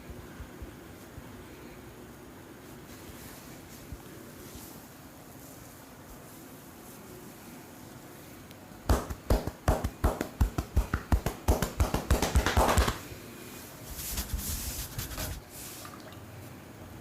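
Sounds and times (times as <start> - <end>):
hands rubbing oiled hair: 2.7 - 8.0, 8.9 - 13.1, 13.8 - 15.8
hands tapping on head: 8.9 - 13.0.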